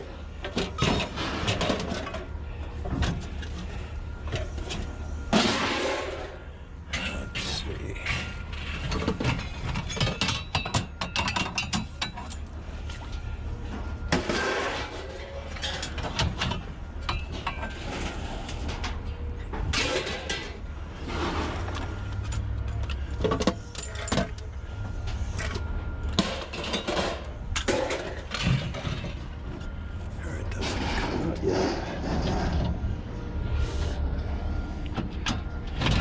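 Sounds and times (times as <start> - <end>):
metal parts clinking and rattling: 4.3 - 13.2, 14.3 - 19.1, 21.7 - 24.6, 25.2 - 29.7
low hum: 12.0 - 36.0.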